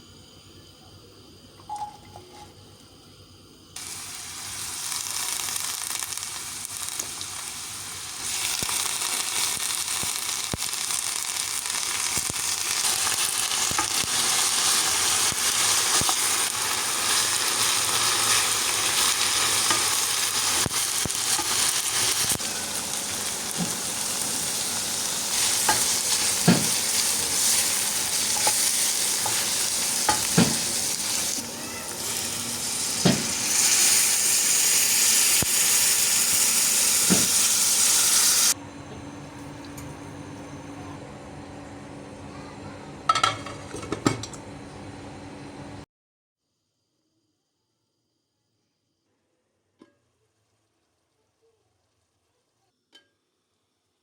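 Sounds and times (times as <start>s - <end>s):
food sizzling in a frying pan: 3.8s - 38.6s.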